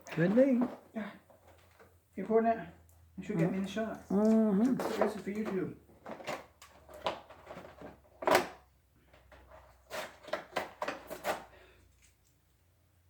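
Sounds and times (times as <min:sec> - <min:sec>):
wrapping paper tearing and rustling: 0:04.2 - 0:05.5.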